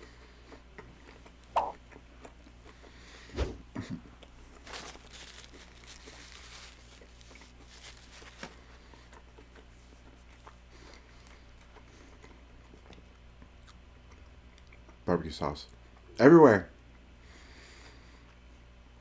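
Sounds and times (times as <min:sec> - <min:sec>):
sandwich being chewed: 0:00.0 - 0:15.0
soft rustle: 0:03.3 - 0:03.7, 0:04.5 - 0:08.9.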